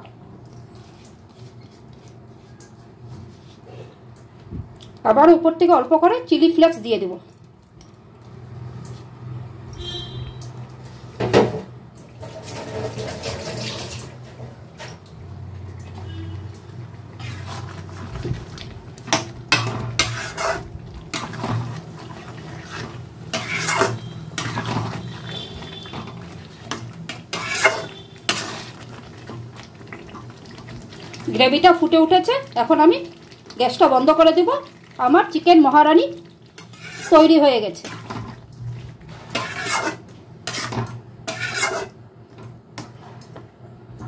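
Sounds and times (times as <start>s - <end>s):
metal spoon scraping a pan: 17.2s - 18.2s, 19.1s - 29.0s, 36.6s - 38.3s, 39.1s - 42.0s.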